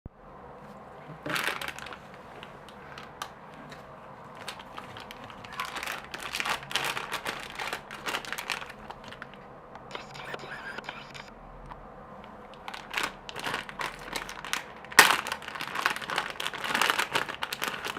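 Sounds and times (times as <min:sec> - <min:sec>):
packaging crinkling: 0:01.3 - 0:03.3, 0:04.3 - 0:09.4, 0:12.5 - 0:17.9.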